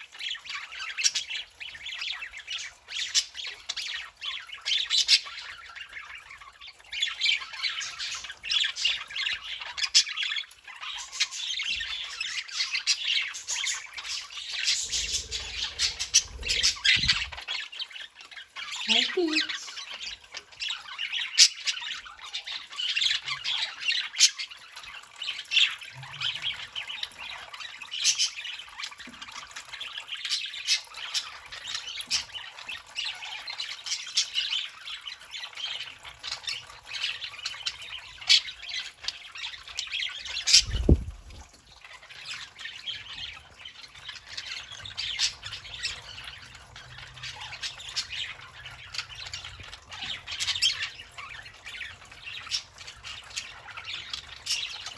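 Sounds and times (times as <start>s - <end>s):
budgerigars chattering and squawking: 7.0s - 17.8s, 40.1s - 41.5s
sharp bird chirps: 40.5s - 41.4s.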